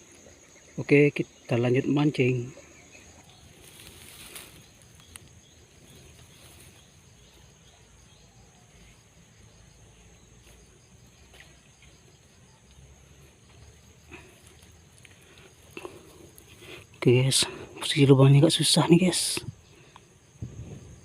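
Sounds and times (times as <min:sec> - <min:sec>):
insects droning: 0:00.0 - 0:21.0
handling ticks and rustles: 0:02.9 - 0:07.7, 0:10.3 - 0:18.2.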